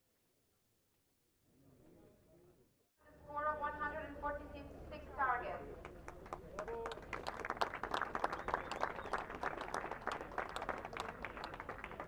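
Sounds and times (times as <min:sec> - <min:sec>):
crowd applauding: 0:05.9 - 0:12.0.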